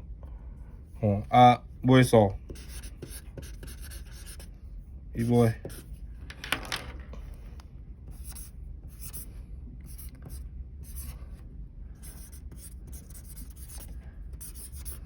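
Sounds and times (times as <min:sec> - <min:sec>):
low steady hum: 0:00.0 - 0:15.0
pen scratching on paper: 0:02.5 - 0:04.5, 0:05.2 - 0:06.0, 0:08.1 - 0:11.3, 0:12.0 - 0:15.0.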